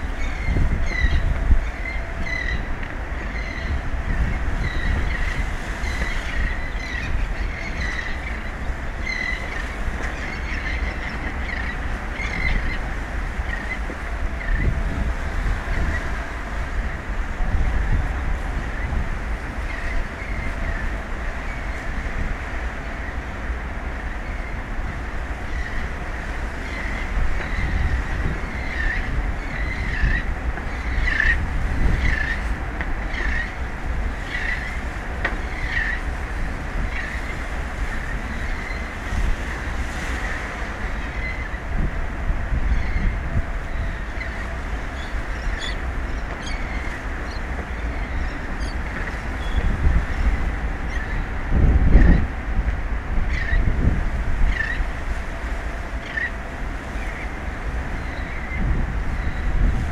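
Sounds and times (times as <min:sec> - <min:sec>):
wind buffeting microphone: 0:00.0 - 0:59.9.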